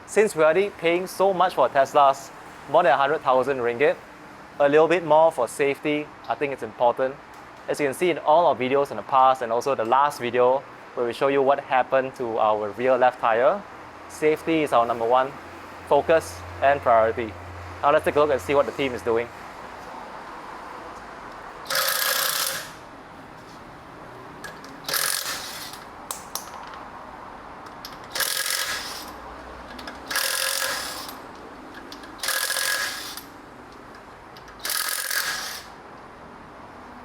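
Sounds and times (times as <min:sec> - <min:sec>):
impact wrench spinning: 0:21.6 - 0:22.8, 0:24.4 - 0:26.8, 0:27.7 - 0:35.8.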